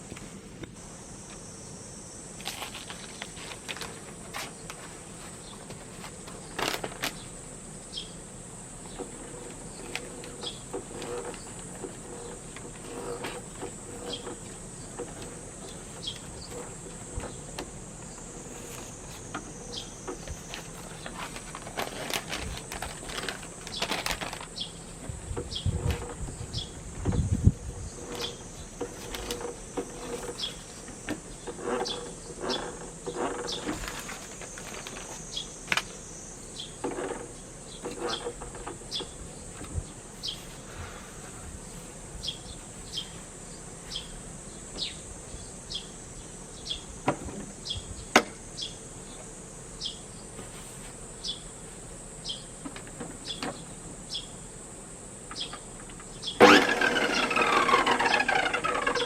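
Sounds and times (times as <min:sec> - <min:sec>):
high insect hum with chirps: 0:00.0 - 0:59.0
electric reel mower whirring: 0:08.6 - 0:39.1, 0:55.7 - 0:59.0.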